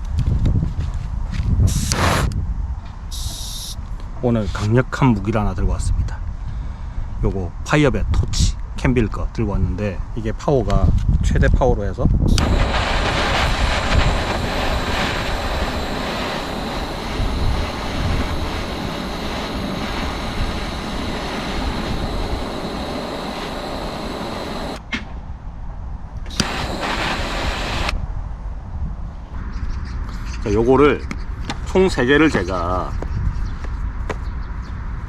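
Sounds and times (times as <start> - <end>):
gas torch flame rushing: 1.7 - 2.4, 3.1 - 3.8, 12.3 - 24.8, 26.3 - 28.0
torch click: 1.7 - 2.4, 12.3 - 24.8, 26.3 - 28.0.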